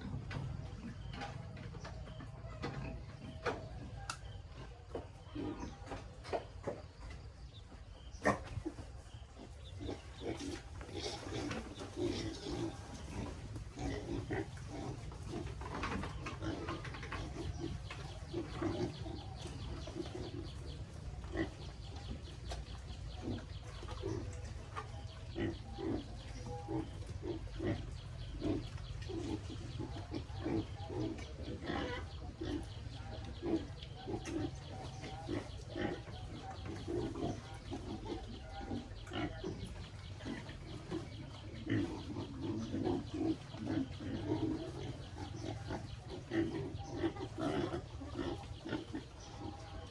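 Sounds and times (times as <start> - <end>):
piglets grunting: 8.1 - 49.9.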